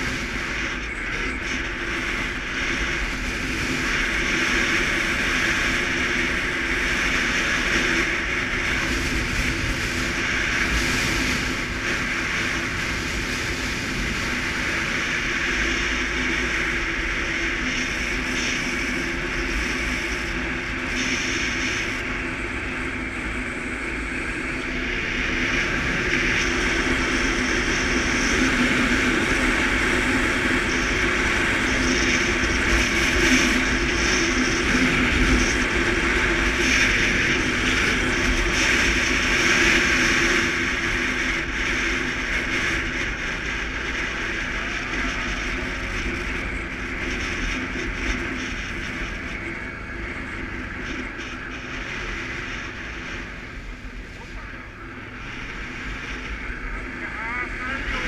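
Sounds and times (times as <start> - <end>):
atv engine running: 0.0 - 58.0
wind and road noise: 0.0 - 58.0.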